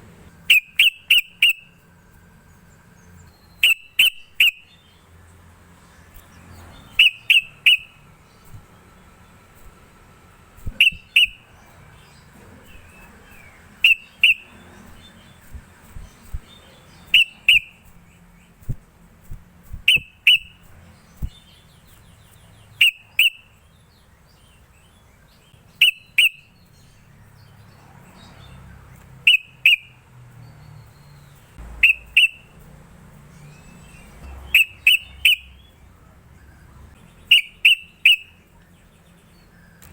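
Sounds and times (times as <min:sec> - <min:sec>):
bird whistling short phrases: 0:06.9 - 0:07.9, 0:10.7 - 0:11.4.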